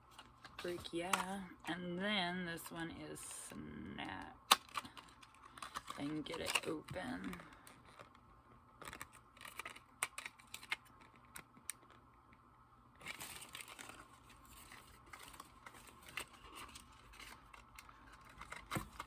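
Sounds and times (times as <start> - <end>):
packaging crinkling and rustling: 4.1 - 12.1, 13.0 - 19.0.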